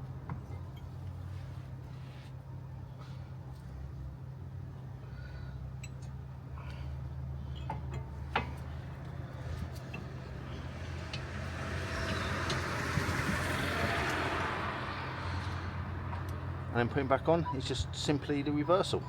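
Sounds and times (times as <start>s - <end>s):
passing vehicle: 6.4s - 19.0s.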